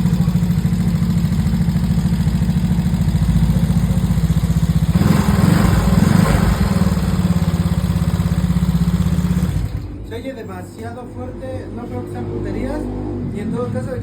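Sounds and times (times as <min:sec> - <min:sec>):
motorcycle engine idling: 0:00.0 - 0:10.0.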